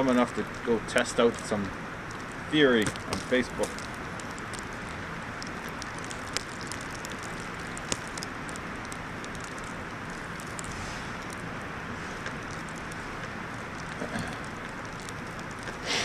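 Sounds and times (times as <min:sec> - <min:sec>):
small crisp ticks: 0:00.0 - 0:16.0
sharp clicks: 0:00.4 - 0:11.5.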